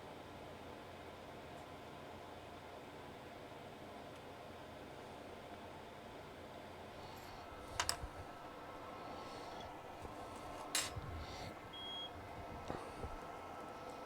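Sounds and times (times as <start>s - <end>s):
small tools clicking and tapping: 7.8s - 8.1s, 10.6s - 11.0s.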